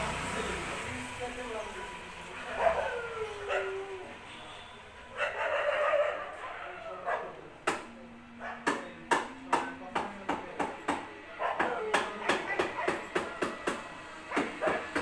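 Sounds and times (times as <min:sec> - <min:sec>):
dog barking: 0:02.5 - 0:03.7, 0:05.1 - 0:07.4, 0:08.4 - 0:08.8, 0:11.3 - 0:15.0.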